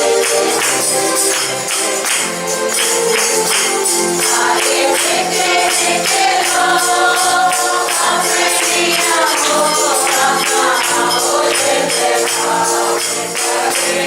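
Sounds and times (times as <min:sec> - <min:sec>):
tambourine shaken: 0:00.0 - 0:14.0
group singing worship song: 0:03.5 - 0:14.0.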